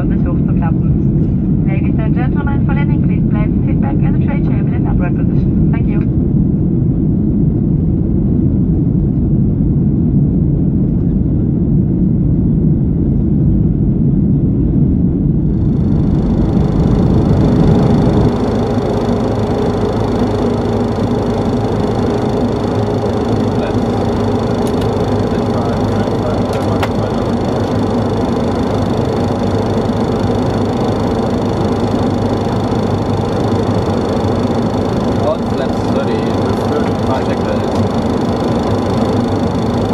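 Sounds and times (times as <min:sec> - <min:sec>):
airplane cabin engine rumble: 0:00.0 - 0:39.9
steady hum tone: 0:00.0 - 0:39.9.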